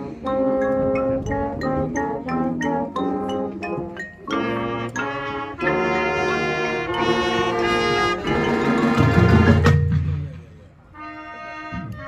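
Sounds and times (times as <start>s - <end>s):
marching band brass playing: 0.0s - 12.0s.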